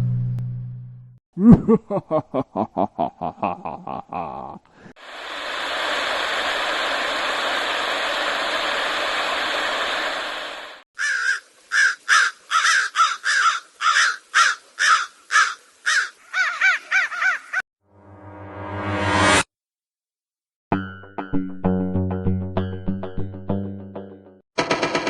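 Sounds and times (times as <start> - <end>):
crow cawing: 11.0 - 17.6.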